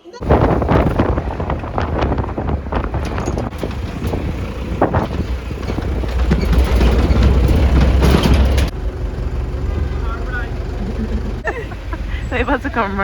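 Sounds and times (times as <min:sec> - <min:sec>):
road rumble: 0:00.0 - 0:13.0
wind noise on microphone: 0:00.1 - 0:08.7.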